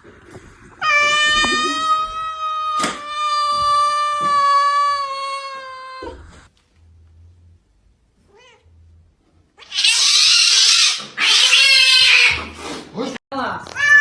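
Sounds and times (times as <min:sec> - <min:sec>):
cat yowling: 0:00.8 - 0:06.5, 0:09.6 - 0:12.5, 0:13.8 - 0:14.0.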